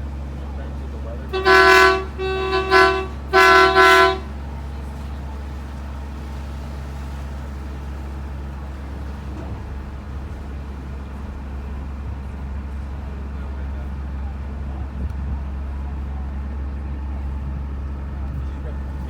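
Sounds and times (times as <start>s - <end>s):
low engine drone: 0.0s - 19.0s
horn blast: 1.3s - 4.5s.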